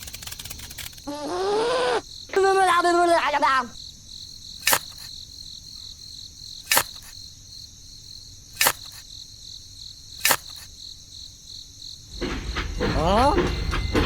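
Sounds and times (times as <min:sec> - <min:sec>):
sharp clicks: 0:00.0 - 0:01.1, 0:04.6 - 0:05.1, 0:06.6 - 0:07.2, 0:08.6 - 0:09.1, 0:10.2 - 0:10.8
crickets trilling: 0:00.0 - 0:14.0.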